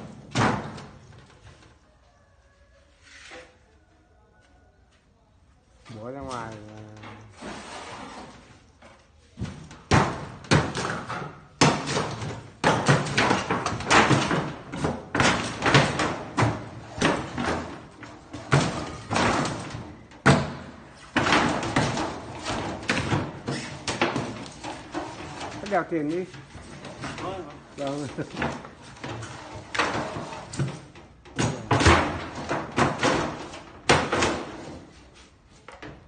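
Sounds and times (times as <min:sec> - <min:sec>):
bangs and knocks on refrigerator: 0:00.0 - 0:01.0, 0:09.4 - 0:24.8, 0:28.3 - 0:34.8.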